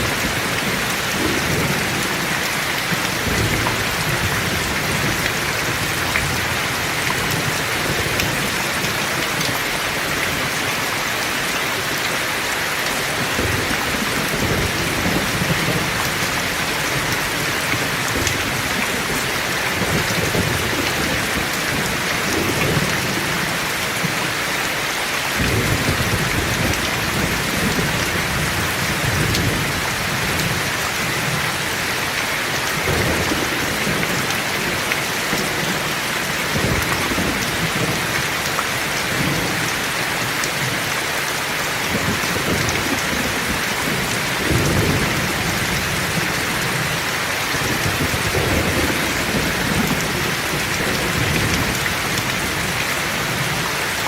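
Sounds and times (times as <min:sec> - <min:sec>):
low thunder rumbling: 0:00.0 - 0:09.0, 0:25.4 - 0:38.1, 0:41.9 - 0:53.6
heavy rain falling: 0:00.0 - 0:54.0.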